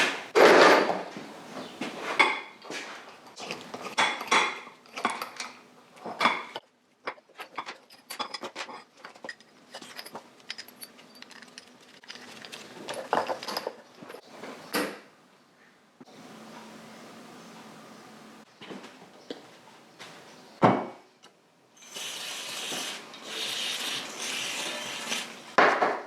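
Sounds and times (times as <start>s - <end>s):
metal tools clattering: 7.3s - 14.2s.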